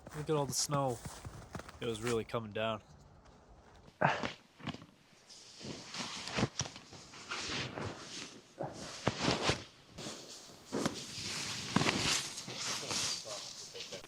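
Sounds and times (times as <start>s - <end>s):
footsteps crunching through snow: 0.0s - 2.4s.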